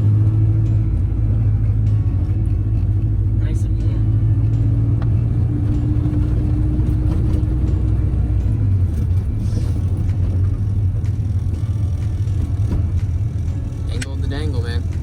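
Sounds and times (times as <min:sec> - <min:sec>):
car engine droning: 0:00.0 - 0:15.0.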